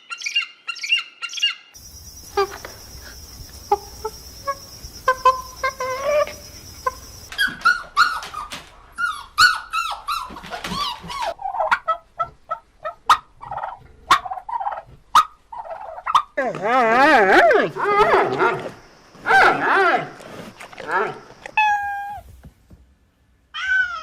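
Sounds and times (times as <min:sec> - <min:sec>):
birds calling: 0:00.2 - 0:08.6
steady high hiss: 0:01.8 - 0:07.3.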